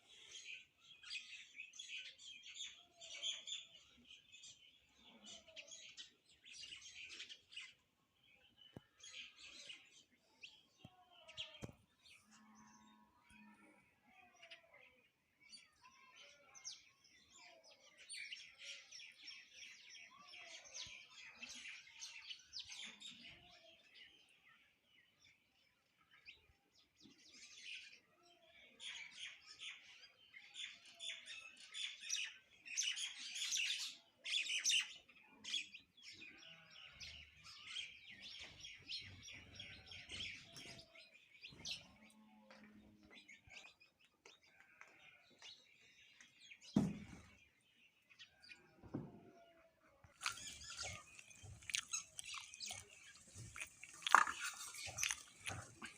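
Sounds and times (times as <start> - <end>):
small birds chirping: 0.0 - 55.9.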